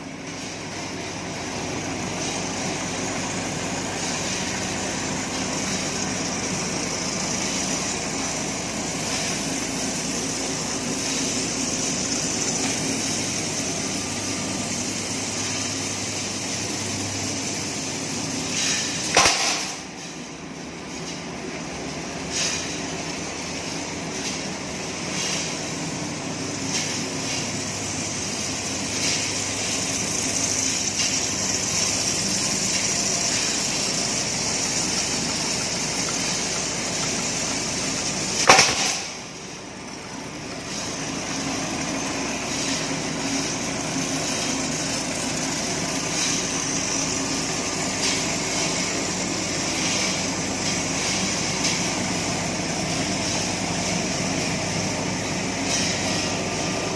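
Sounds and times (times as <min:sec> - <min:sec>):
loud sharp clack: 0:18.6 - 0:19.9, 0:38.4 - 0:39.2.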